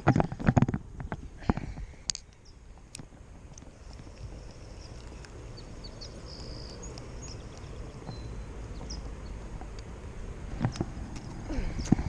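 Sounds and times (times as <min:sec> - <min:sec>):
steady low rumble: 0:00.0 - 0:12.0
high bird chirps: 0:04.7 - 0:09.4.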